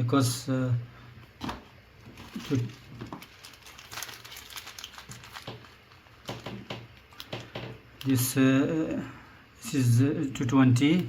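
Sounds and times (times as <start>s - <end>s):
light clicks and crinkling rustles: 1.4s - 8.2s.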